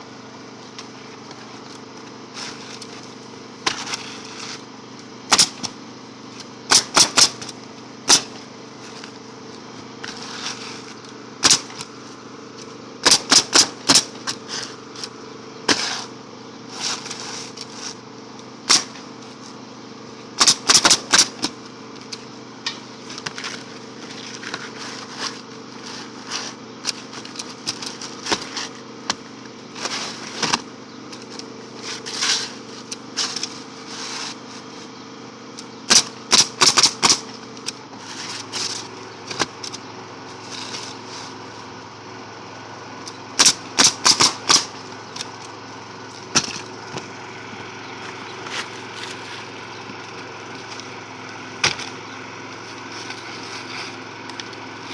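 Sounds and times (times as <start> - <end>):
steady motor hum: 0.0 - 54.9
nail gun firing: 5.3 - 5.7, 6.7 - 7.5, 8.1 - 8.4, 11.4 - 11.8, 13.0 - 14.2, 18.7 - 19.0, 20.4 - 21.5, 35.9 - 37.3, 43.4 - 44.8.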